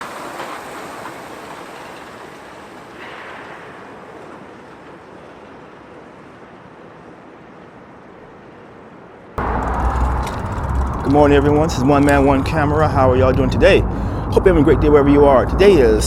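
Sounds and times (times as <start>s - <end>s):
road traffic passing: 9.4s - 16.0s.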